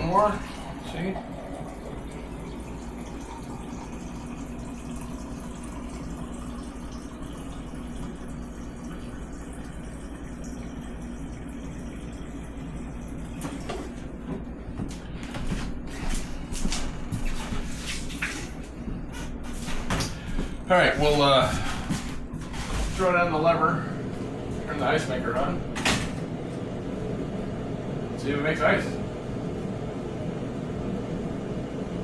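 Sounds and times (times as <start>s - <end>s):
water running into a glass: 0.0s - 14.1s
steady hum: 0.0s - 32.0s.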